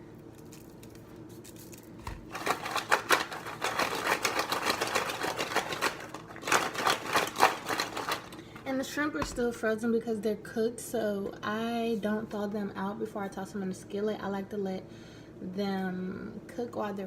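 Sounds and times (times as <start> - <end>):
frozen shrimp rattling: 0.3 - 8.6.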